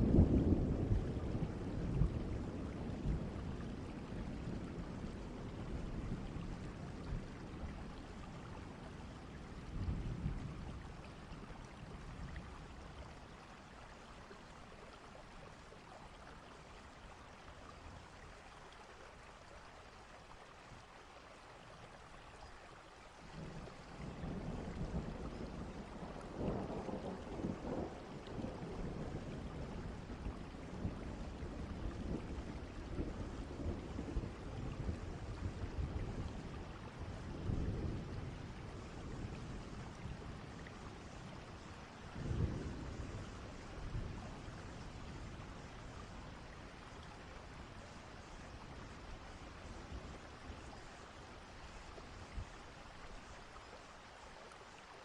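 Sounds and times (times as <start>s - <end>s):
rolling thunder: 0.0s - 8.0s, 23.4s - 46.4s
steady rain: 0.0s - 55.0s.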